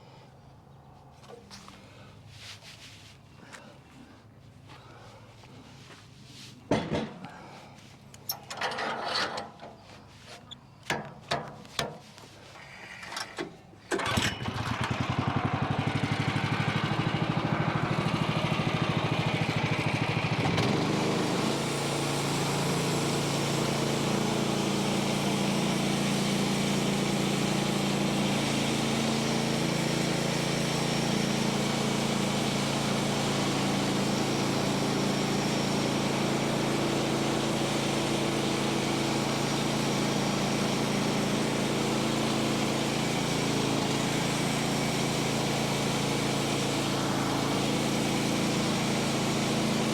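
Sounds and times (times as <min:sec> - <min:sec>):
small engine starting and running: 0:08.3 - 0:09.6, 0:12.8 - 0:49.9.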